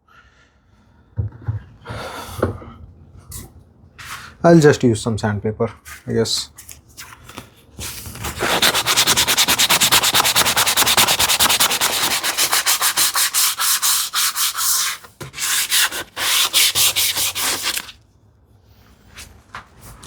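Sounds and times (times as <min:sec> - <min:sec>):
sandpaper rubbing on wood: 0:08.2 - 0:17.9.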